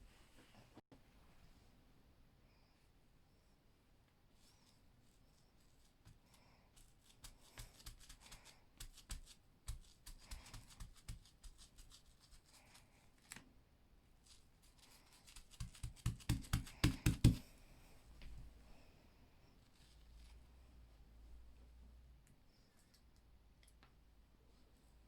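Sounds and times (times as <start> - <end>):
sponge dabbing on fabric: 5.0 - 12.8, 14.2 - 17.5.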